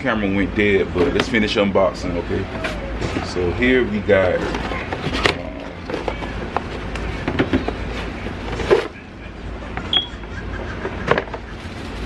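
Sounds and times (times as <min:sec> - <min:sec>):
cardboard box being handled: 0:02.4 - 0:09.0.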